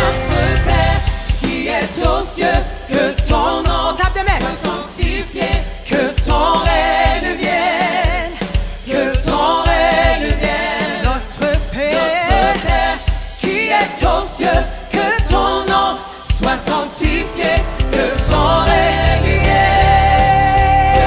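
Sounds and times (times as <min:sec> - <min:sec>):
person singing: 0:00.0 - 0:01.0, 0:15.1 - 0:21.0
worship band playing: 0:00.0 - 0:21.0.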